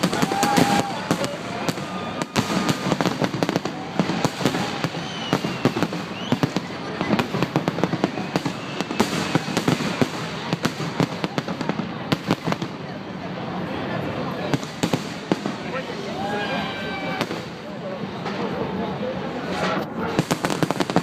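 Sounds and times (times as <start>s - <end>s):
fireworks bangs and crackling: 0.0s - 16.3s, 17.0s - 21.0s.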